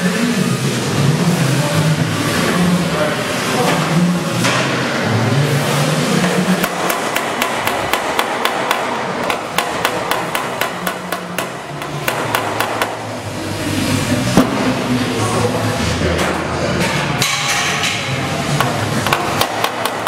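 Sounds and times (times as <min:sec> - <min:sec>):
steady workshop hum: 0:00.0 - 0:20.0
hand hammer striking metal panel: 0:06.6 - 0:13.0, 0:18.6 - 0:20.0.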